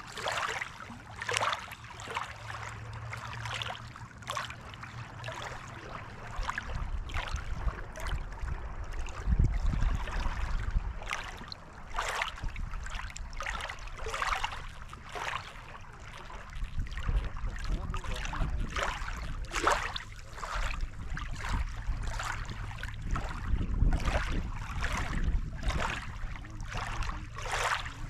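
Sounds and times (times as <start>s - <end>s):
waves lapping against shore: 0.0s - 28.0s
low rumble: 16.6s - 28.0s.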